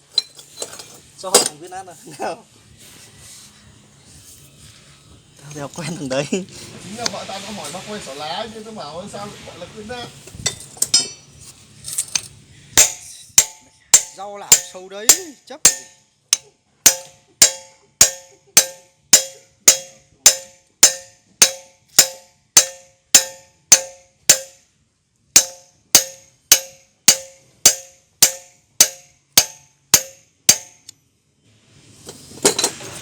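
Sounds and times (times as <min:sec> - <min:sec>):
hammer striking steel: 0:10.5 - 0:11.3, 0:12.8 - 0:24.7, 0:25.4 - 0:30.9.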